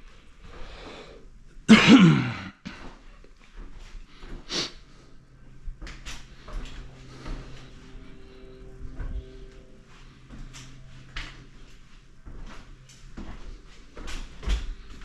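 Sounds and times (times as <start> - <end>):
man coughing: 1.7 - 2.7.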